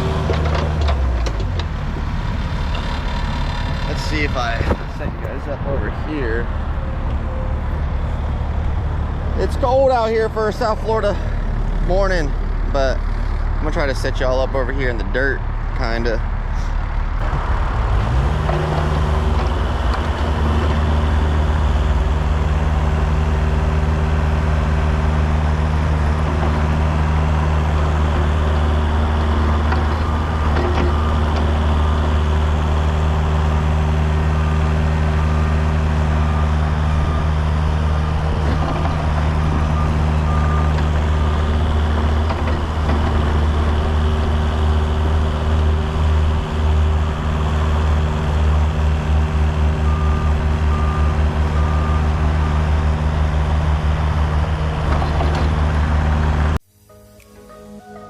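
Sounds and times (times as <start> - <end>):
diesel excavator engine running: 0.0 - 56.6
reversing alarm beeping: 28.7 - 32.2, 36.0 - 42.2, 49.7 - 53.2.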